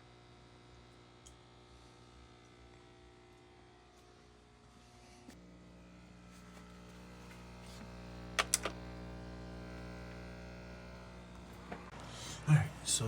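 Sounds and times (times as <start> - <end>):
furnace humming: 0.0 - 13.0
sharp clicks: 8.4 - 8.8.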